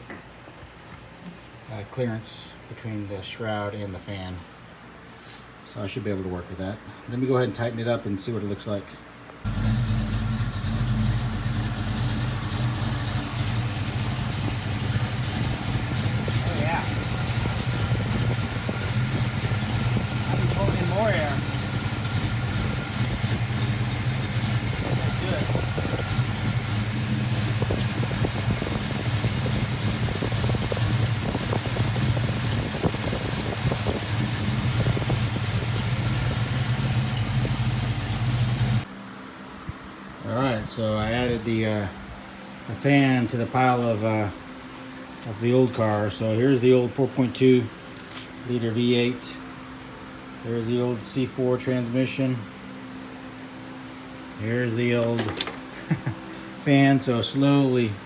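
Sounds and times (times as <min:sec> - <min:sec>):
car engine idling: 0:09.4 - 0:38.9
clutch fan turning: 0:09.4 - 0:38.9, 0:47.7 - 0:48.6, 0:54.4 - 0:56.1.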